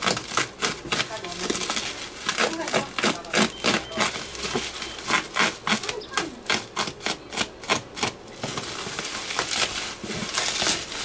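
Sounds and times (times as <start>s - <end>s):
packaging rustling: 0.0s - 6.3s, 8.0s - 11.0s
packaging ripping and crinkling: 0.0s - 11.0s.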